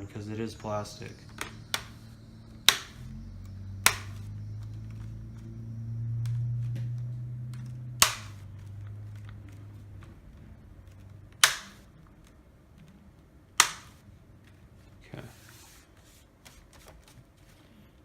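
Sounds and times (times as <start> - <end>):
plastic clips snapping: 1.3 - 4.7, 6.1 - 10.2, 10.9 - 14.1
small plastic clicks: 1.3 - 4.7, 10.9 - 13.0, 13.6 - 14.0.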